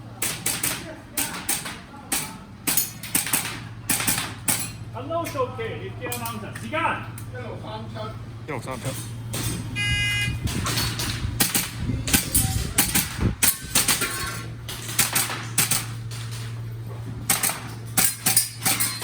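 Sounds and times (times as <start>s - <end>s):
airsoft gun shots: 11.4s - 11.8s.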